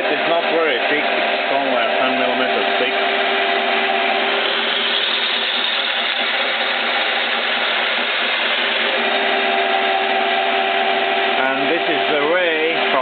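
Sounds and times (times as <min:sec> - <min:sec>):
milling machine running: 0:00.0 - 0:13.0.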